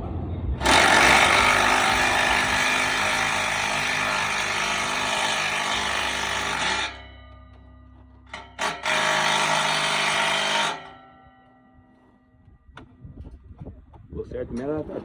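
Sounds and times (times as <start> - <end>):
handheld power tool running: 0.6 - 7.2, 8.3 - 11.0.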